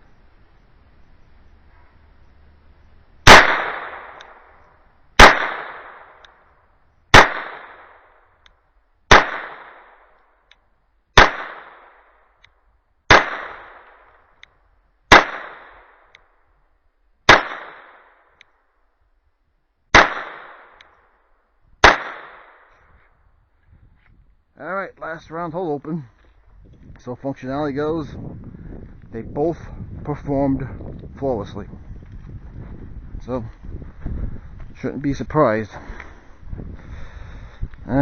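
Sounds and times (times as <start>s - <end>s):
pistol shots: 3.2s - 4.6s, 5.2s - 6.4s, 7.1s - 8.1s, 9.1s - 10.1s, 11.2s - 12.0s, 13.1s - 14.1s, 15.1s - 16.1s, 17.3s - 18.2s, 19.9s - 20.9s, 21.8s - 22.7s.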